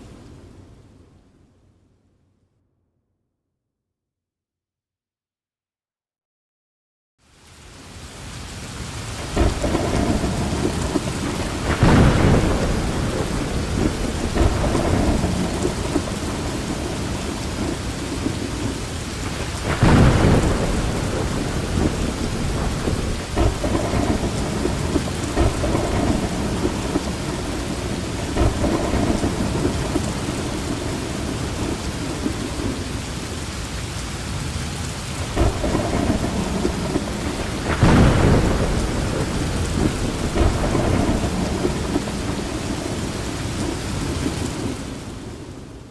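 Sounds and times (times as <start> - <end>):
heavy rain pouring: 7.2 - 45.9
thunder rumbling: 9.1 - 33.1, 34.5 - 45.8.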